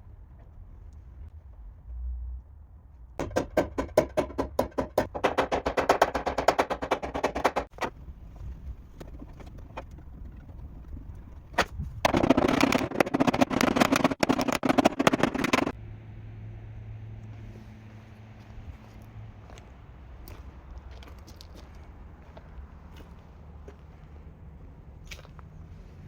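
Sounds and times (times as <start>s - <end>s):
rapid tapping on car metal: 3.2s - 7.8s.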